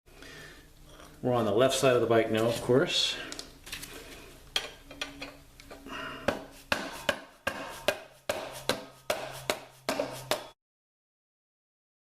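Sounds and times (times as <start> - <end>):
faint hum: 0.1 - 7.8
hammer tapping on metal: 6.3 - 10.6.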